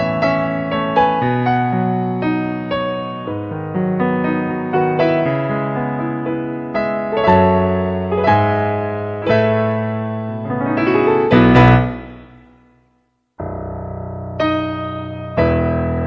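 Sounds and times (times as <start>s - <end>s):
gentle piano music: 0.0s - 12.8s, 13.4s - 16.0s.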